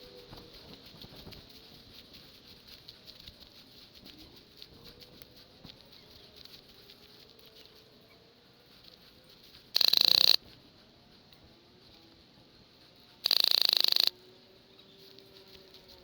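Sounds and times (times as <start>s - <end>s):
airsoft gun full-auto burst: 9.8s - 10.4s, 13.2s - 14.1s.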